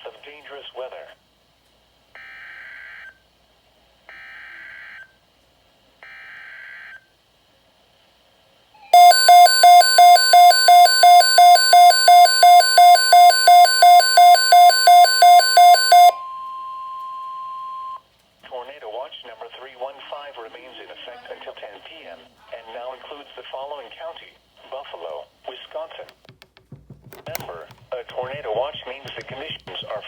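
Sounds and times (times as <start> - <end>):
screechy digital data tones: 9.0 - 16.2
steady high tone: 9.0 - 17.9.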